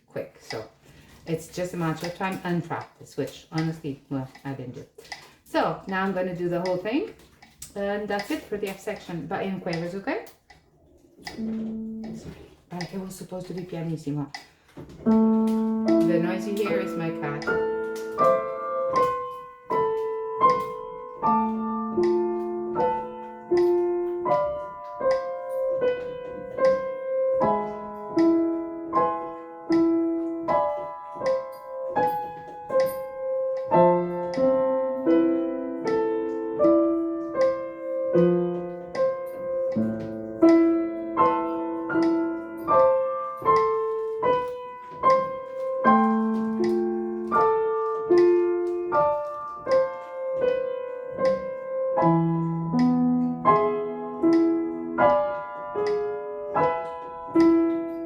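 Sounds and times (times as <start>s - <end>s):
slow piano playing: 10.8s - 12.8s, 14.9s - 58.0s.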